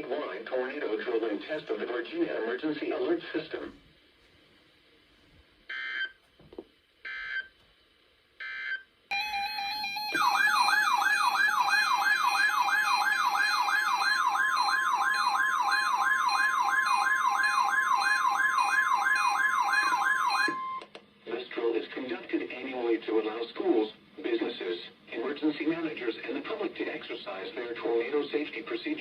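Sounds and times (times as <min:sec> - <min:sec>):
warbling alert tone: 0:09.1 - 0:13.2.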